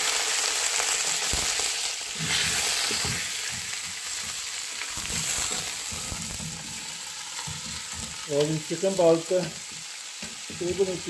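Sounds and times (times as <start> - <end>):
vegetables sizzling in oil: 0.0 - 11.0
spatula scraping pan: 2.1 - 8.6.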